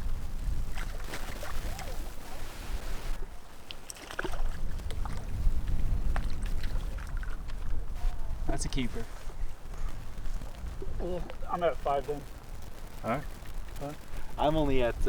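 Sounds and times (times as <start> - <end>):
light water splashing: 0.0 - 11.4
wind rumbling on microphone: 0.0 - 15.0.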